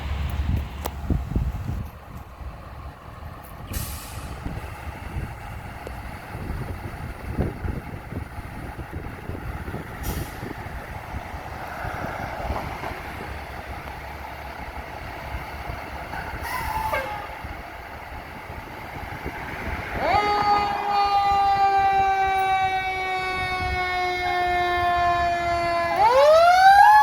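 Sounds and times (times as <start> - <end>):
diesel engine rumbling: 0.0 - 27.0
air brake hisses: 3.7 - 4.4, 10.0 - 10.6, 16.4 - 17.2
fire truck siren: 3.8 - 27.0.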